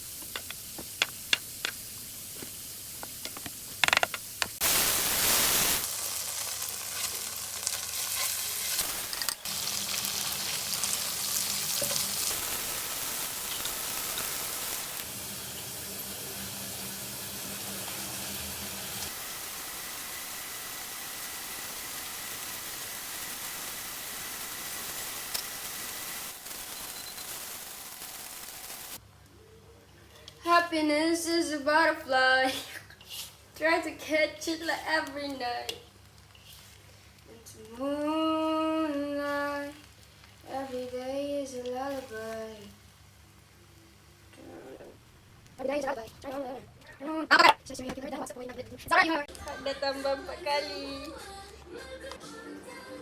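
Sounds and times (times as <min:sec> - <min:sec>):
food sizzling in a pan: 0:00.0 - 0:29.0, 0:37.7 - 0:46.0
sharp clicks and knocks: 0:00.2 - 0:01.8, 0:03.0 - 0:04.6.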